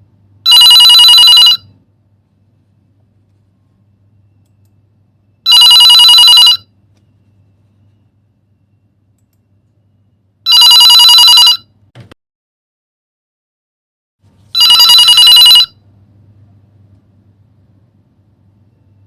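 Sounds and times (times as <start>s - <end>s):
telephone ringing: 0.5s - 1.8s, 5.4s - 6.8s, 10.4s - 11.8s, 14.6s - 15.8s.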